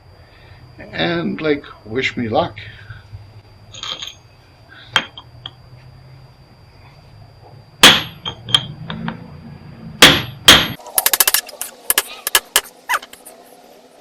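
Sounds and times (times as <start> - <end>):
axe striking metal: 7.8 - 8.8, 10.0 - 10.8.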